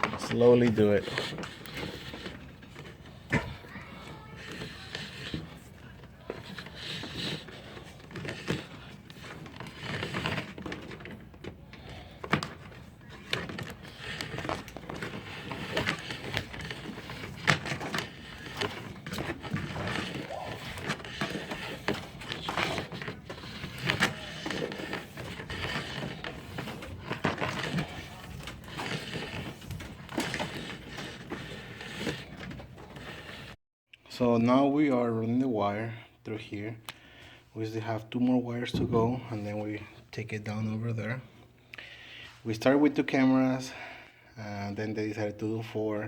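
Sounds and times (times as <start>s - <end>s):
cable rustling and scraping: 0.0s - 33.6s.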